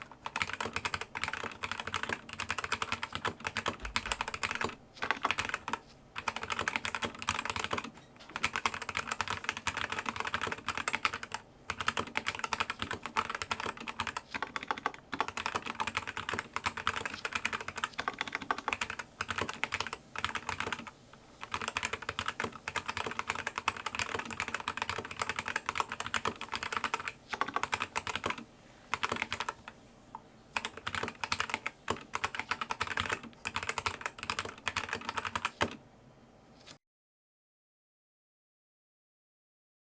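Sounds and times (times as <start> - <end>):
fast typing on mechanical keyboard: 0.0 - 29.6, 30.6 - 35.8.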